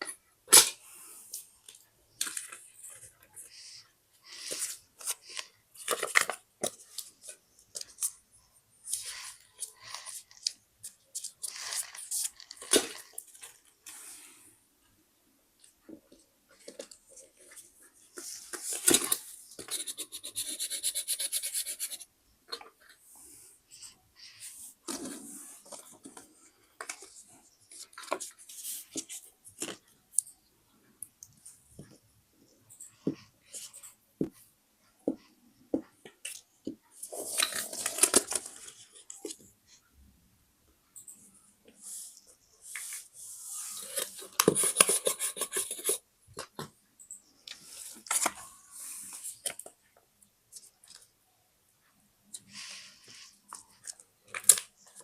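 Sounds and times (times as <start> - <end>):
crisp paper clicks and crinkles: 4.3 - 8.2, 8.8 - 14.0, 15.6 - 21.4, 24.9 - 30.3, 36.2 - 39.5.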